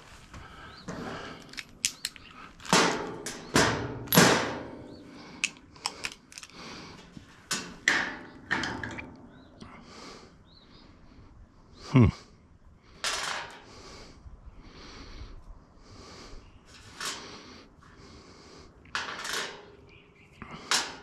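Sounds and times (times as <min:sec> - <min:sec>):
metal hardware clicking: 0:05.4 - 0:06.6.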